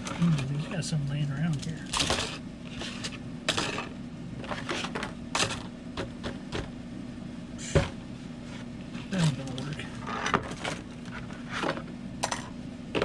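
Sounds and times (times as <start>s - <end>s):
air conditioner hum: 0.0s - 13.0s
small hard objects clattering: 1.5s - 3.9s.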